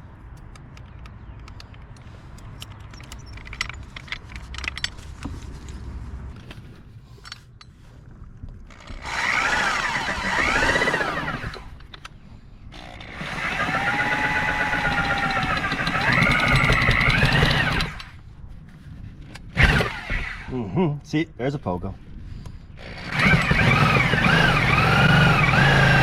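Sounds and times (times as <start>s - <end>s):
reciprocating saw cutting wood: 8.8s - 11.8s, 12.8s - 18.1s, 19.6s - 20.5s, 22.8s - 26.0s.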